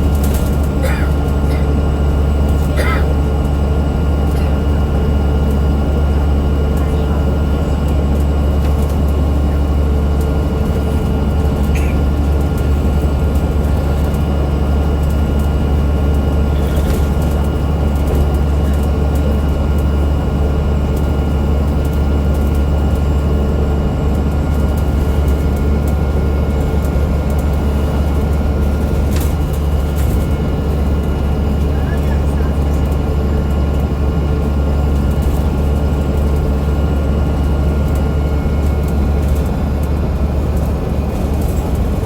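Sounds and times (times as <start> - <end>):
bus engine low drone: 0.0 - 42.0.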